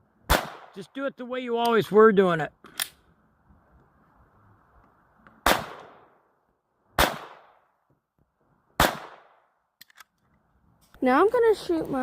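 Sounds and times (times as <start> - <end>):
gunshots with echo: 7.0 - 7.6, 8.8 - 9.4.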